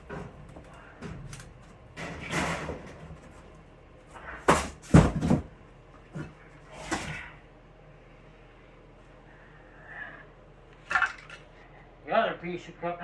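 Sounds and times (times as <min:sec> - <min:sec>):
wooden boards knocking and thumping: 0:04.5 - 0:05.6.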